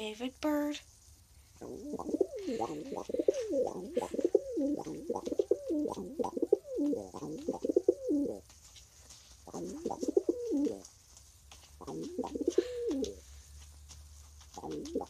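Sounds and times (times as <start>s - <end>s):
bird cooing: 1.6s - 8.4s, 9.5s - 10.9s, 11.8s - 13.2s, 14.6s - 15.0s.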